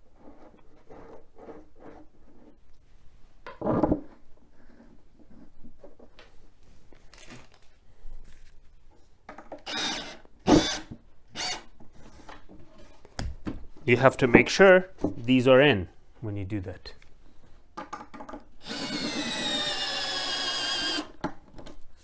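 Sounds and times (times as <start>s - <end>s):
power drill driving screws: 9.6s - 11.7s, 18.6s - 21.3s.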